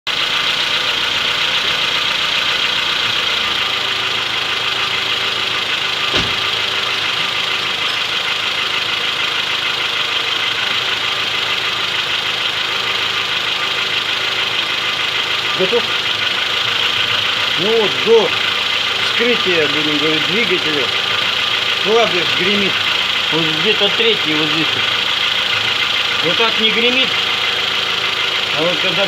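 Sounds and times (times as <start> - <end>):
car engine idling: 0.1 - 29.0
sharp thump: 6.1 - 6.7.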